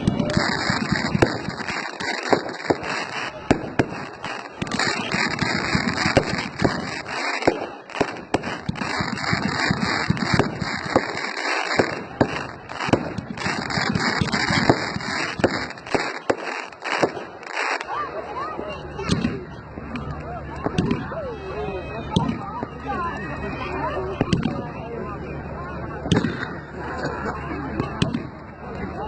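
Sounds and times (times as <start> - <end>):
fireworks bangs: 0.0 - 18.1, 26.0 - 26.6
fireworks crackle: 0.0 - 18.4.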